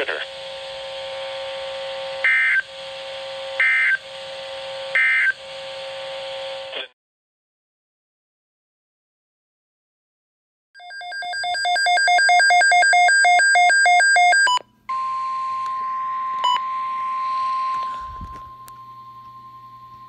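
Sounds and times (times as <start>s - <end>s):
radio hiss: 0.0s - 0.4s.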